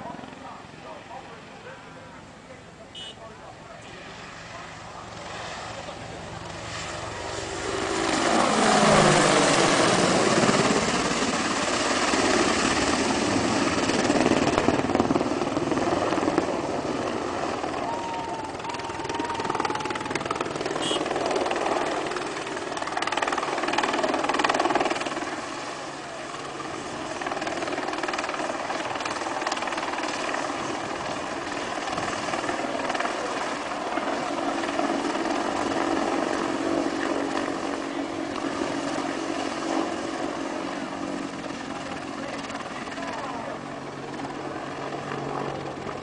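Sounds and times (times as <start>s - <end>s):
helicopter rotor beating roar: 0.0s - 46.0s.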